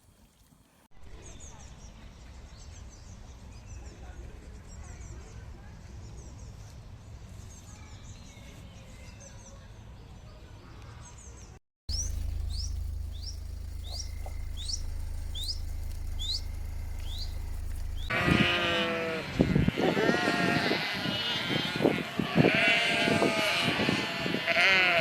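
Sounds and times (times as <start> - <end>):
bird repeating sweeping chirp: 11.9 - 18.1
small birds chirping: 11.9 - 18.2
low steady rumble: 11.9 - 18.3.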